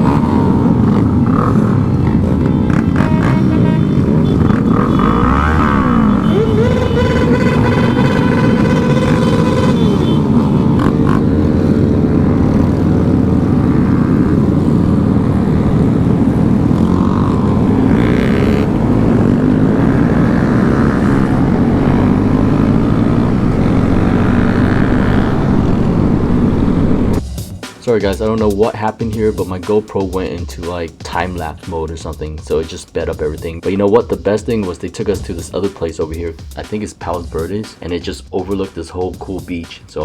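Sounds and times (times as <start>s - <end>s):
wind rushing over microphone: 0.0s - 27.2s
small motorcycle engine: 0.0s - 27.5s.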